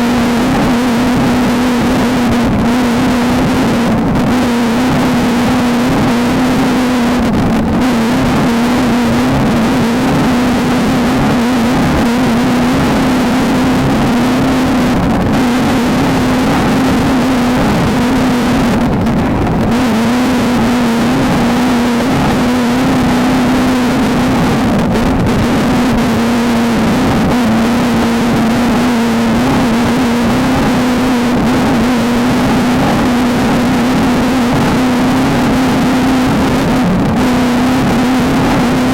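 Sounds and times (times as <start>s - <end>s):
race car engine running hard: 0.0s - 38.9s
wind and road noise: 0.0s - 38.9s.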